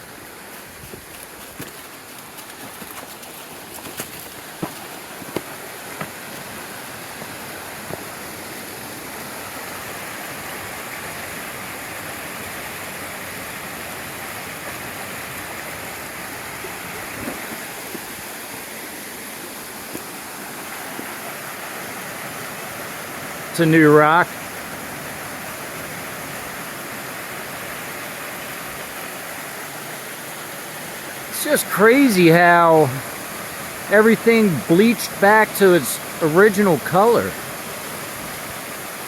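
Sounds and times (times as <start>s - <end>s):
water rushing over rocks: 0.0s - 39.0s.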